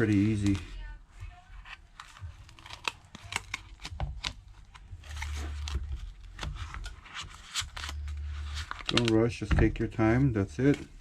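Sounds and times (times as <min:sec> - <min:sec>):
adhesive crackling and tearing: 0:01.7 - 0:09.3
low hum: 0:07.6 - 0:09.1.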